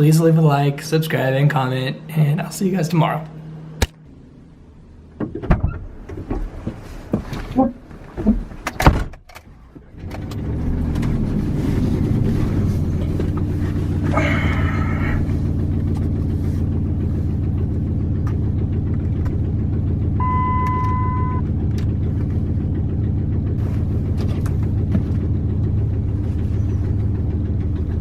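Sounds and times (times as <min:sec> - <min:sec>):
truck engine starting and idling: 0:00.0 - 0:28.0
electronic beep: 0:20.2 - 0:21.4.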